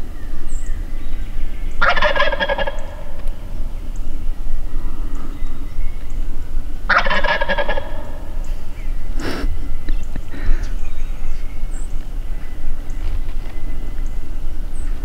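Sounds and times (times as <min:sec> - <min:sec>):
steady low rumble: 0:00.0 - 0:15.0
turkey gobbling: 0:01.8 - 0:03.4, 0:06.9 - 0:08.6.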